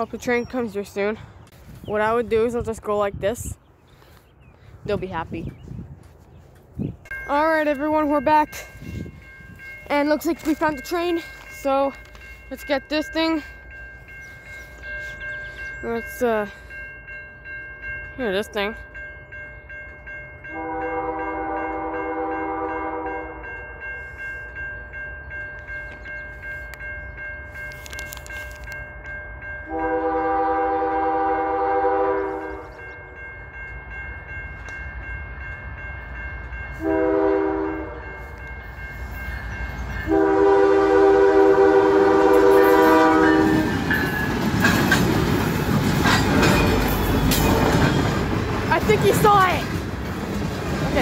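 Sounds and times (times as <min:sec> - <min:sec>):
electronic crossing bell ringing: 0:07.1 - 0:30.4
locomotive air horn: 0:20.5 - 0:23.5, 0:29.7 - 0:32.8, 0:36.8 - 0:38.2, 0:40.1 - 0:43.8
train wheels clattering on rails: 0:42.4 - 0:51.0.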